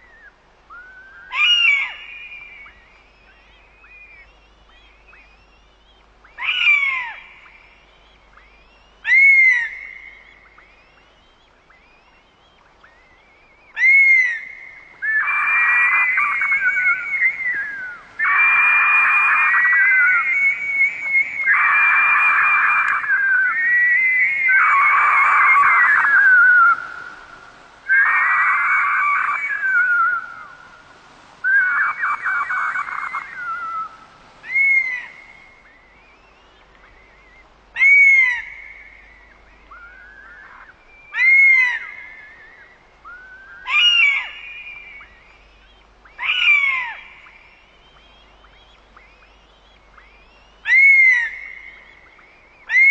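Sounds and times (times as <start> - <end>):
bird of prey screaming: 0.7 - 2.2, 15.0 - 30.6, 31.4 - 35.8, 37.0 - 38.6, 39.7 - 44.6, 46.1 - 47.1, 50.1 - 51.5, 52.6 - 52.9.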